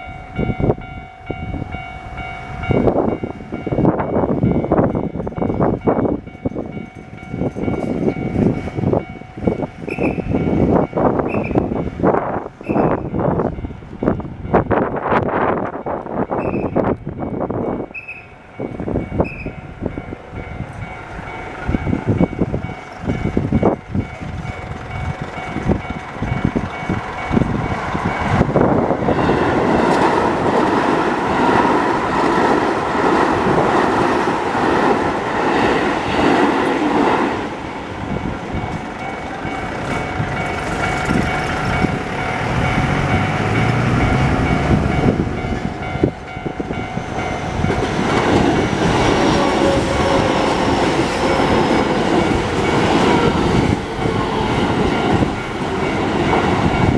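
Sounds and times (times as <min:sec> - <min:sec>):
crossing warning bell: 0:00.0 - 0:56.9
train wheels clattering over joints: 0:38.4 - 0:56.9.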